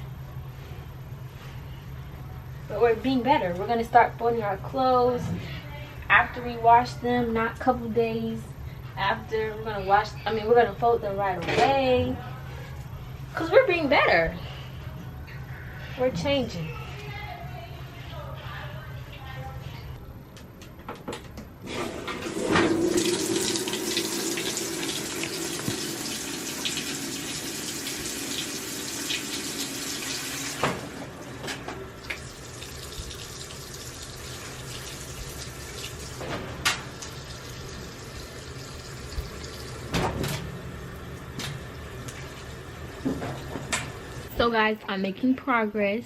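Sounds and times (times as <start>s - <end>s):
tap running into sink: 22.1s - 27.4s.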